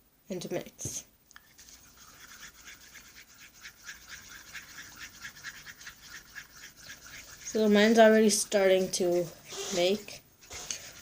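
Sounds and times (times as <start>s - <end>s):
slime being stirred by hand: 1.4s - 11.0s.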